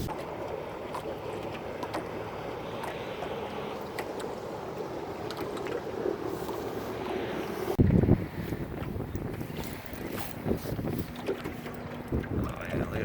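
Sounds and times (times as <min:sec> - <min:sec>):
fishing boat engine noise: 0:00.0 - 0:13.0.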